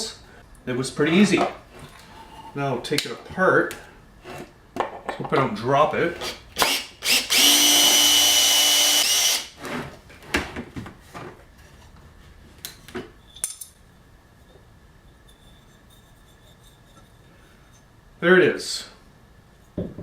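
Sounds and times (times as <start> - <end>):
power drill motor running: 6.2 - 9.6.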